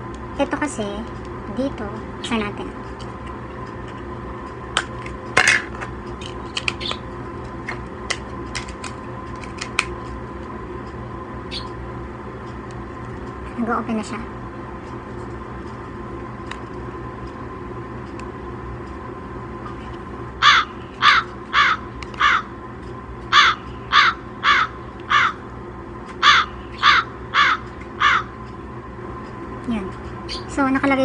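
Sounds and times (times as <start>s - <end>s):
crow cawing: 20.4s - 22.5s, 23.3s - 25.4s, 26.2s - 28.4s.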